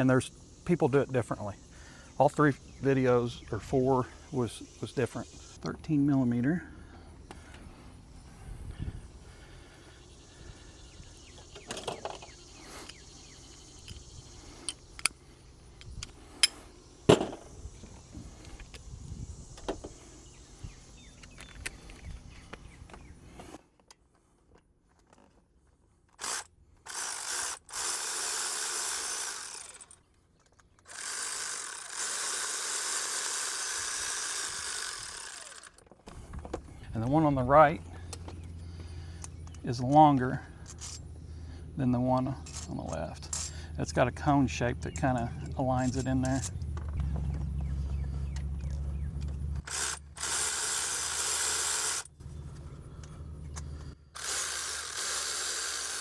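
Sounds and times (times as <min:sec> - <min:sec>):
power tool running: 0:16.2 - 0:20.8, 0:26.2 - 0:30.0, 0:30.8 - 0:36.8, 0:45.9 - 0:56.0.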